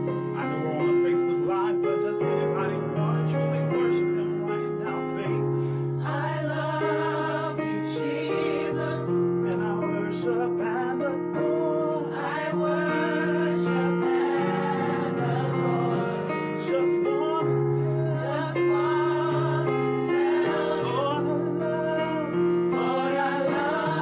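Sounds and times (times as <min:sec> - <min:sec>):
keyboard accompaniment: 0:00.0 - 0:24.0
vocal group singing in harmony: 0:04.8 - 0:24.0.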